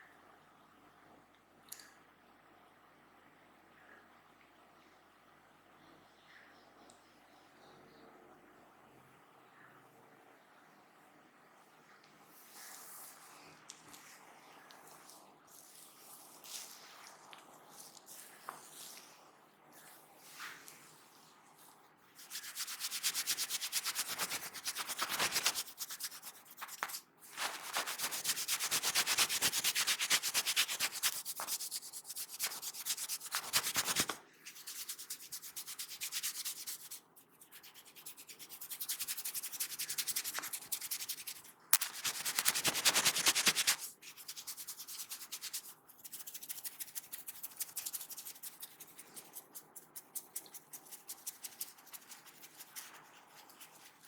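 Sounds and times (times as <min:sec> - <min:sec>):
hands rubbing skin and hair: 0:13.9 - 0:19.1, 0:21.6 - 0:54.0.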